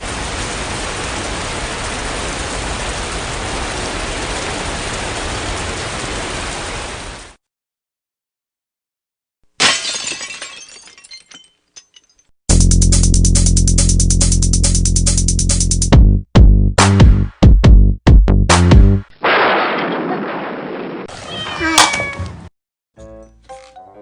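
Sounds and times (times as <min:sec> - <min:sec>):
glass shattering: 0:09.6 - 0:12.3.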